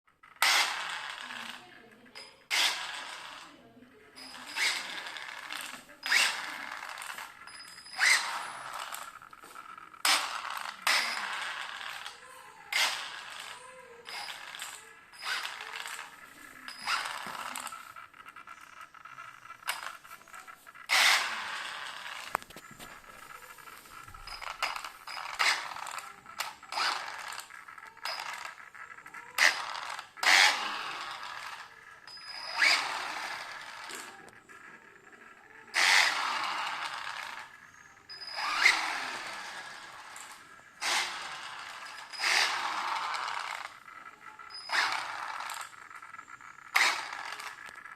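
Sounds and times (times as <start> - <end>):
electric motor whine revving: 4.2 - 47.9.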